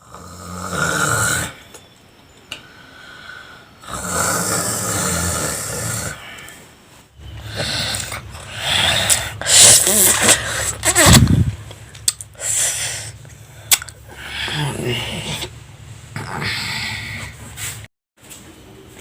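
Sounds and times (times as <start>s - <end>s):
child snoring loudly: 0.0s - 1.6s, 3.8s - 6.4s, 7.4s - 11.4s, 16.2s - 17.4s.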